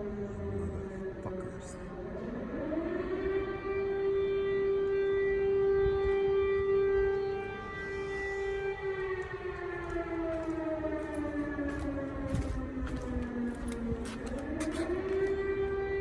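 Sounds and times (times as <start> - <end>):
air-raid siren wailing: 0.0 - 16.0.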